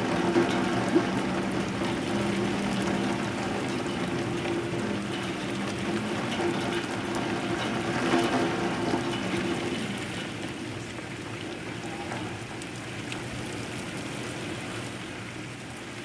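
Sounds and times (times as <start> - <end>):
heavy rain falling: 0.0 - 10.9.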